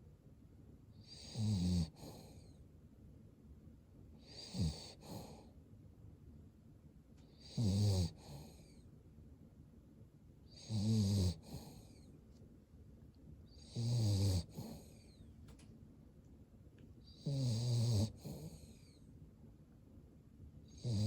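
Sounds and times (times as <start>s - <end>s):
dog snoring: 1.0s - 2.6s, 4.2s - 5.5s, 7.3s - 8.8s, 10.5s - 12.1s, 13.5s - 15.2s, 17.0s - 19.0s, 20.7s - 21.0s.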